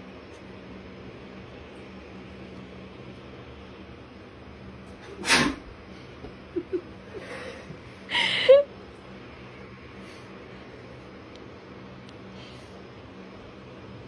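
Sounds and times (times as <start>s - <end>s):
person sneezing: 5.0s - 5.6s.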